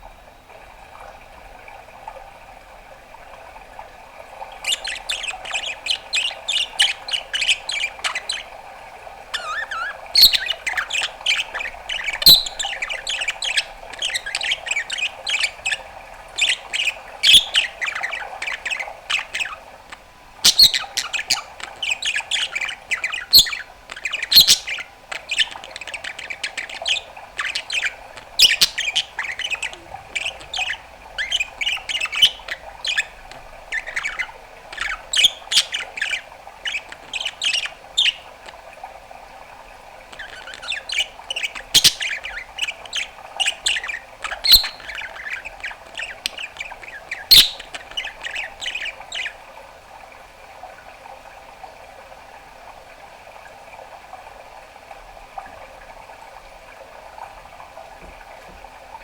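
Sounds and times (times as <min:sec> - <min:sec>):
budgerigar warbling: 0:04.7 - 0:08.5, 0:09.3 - 0:15.8, 0:16.4 - 0:19.6, 0:20.4 - 0:38.3, 0:40.2 - 0:49.4.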